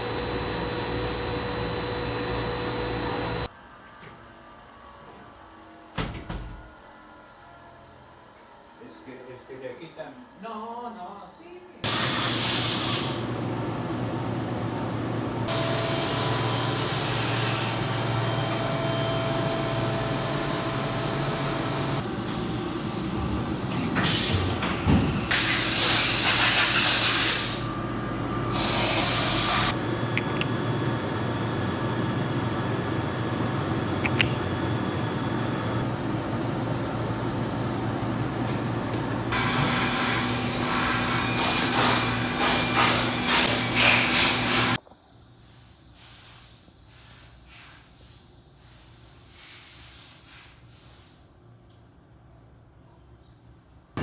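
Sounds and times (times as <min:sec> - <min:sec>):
machine humming: 0:00.0 - 0:03.5, 0:13.2 - 0:44.8
loud hissing blasts: 0:25.3 - 0:27.7.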